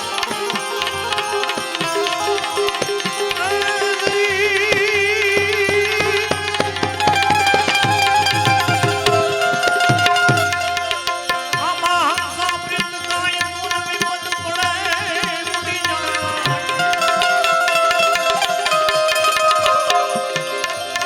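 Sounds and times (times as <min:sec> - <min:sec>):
melody instrument holding long notes: 0:00.0 - 0:13.8
tabla rhythm: 0:00.0 - 0:21.0.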